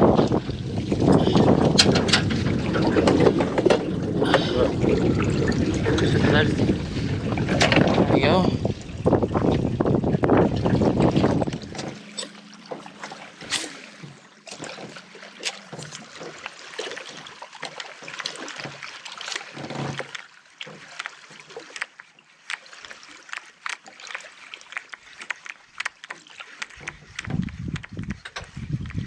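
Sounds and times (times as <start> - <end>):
water lapping around a boat: 0.0 - 29.0
small clicks and knocks: 18.6 - 29.0.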